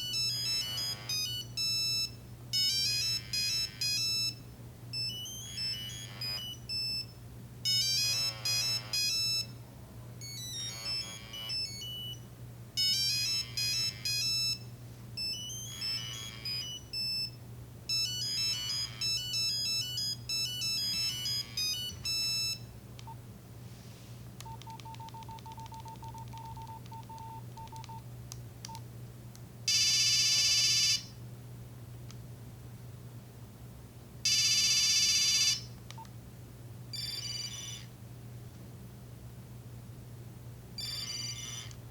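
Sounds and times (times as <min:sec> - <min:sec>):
mobile phone ringtone melody: 0:00.0 - 0:04.4, 0:05.0 - 0:07.1, 0:07.7 - 0:09.5, 0:10.2 - 0:12.2, 0:12.8 - 0:14.6, 0:15.2 - 0:17.3, 0:17.9 - 0:22.6, 0:29.7 - 0:31.1, 0:34.3 - 0:35.6, 0:37.0 - 0:37.9, 0:40.8 - 0:41.7.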